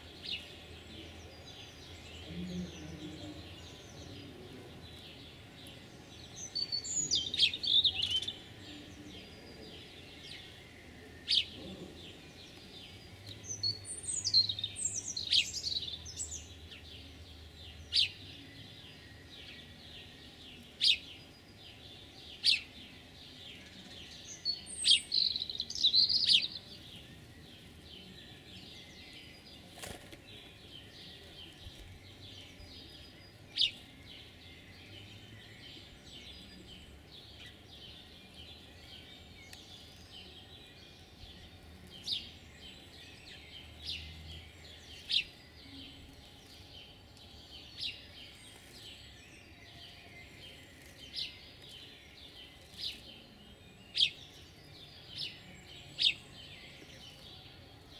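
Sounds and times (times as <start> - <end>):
songbirds chirping: 0.0 - 57.9.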